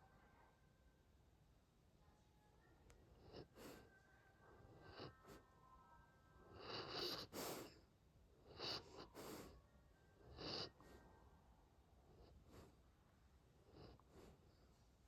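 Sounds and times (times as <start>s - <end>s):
dog snoring softly: 3.1s - 5.5s, 6.4s - 7.8s, 8.4s - 9.6s, 10.2s - 11.0s.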